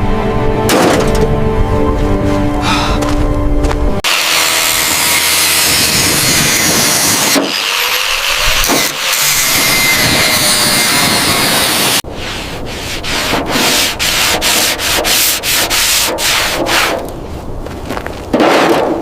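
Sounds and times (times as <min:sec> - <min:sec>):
abrasive sanding strokes: 0:04.1 - 0:17.0.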